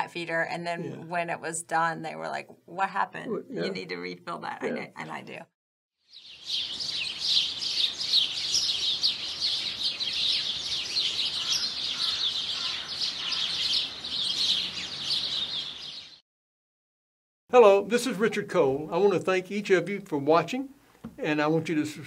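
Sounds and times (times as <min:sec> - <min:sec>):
songbirds chirping: 0:06.1 - 0:16.2.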